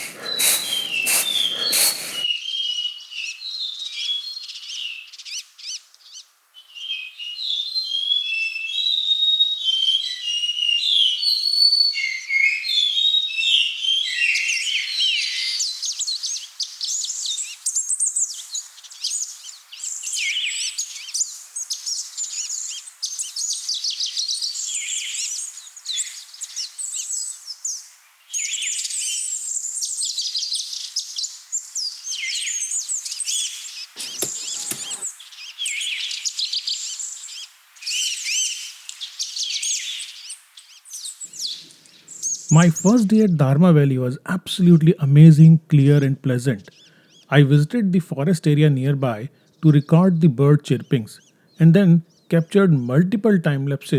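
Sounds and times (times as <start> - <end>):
songbirds chirping and trilling: 0.0 - 2.2.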